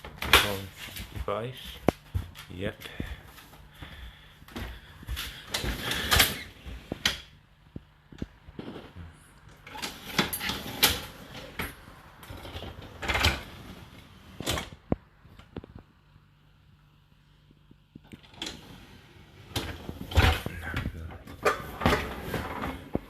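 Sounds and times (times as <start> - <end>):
dishwasher racks clacking and scraping: 9.6 - 13.8, 19.4 - 23.0.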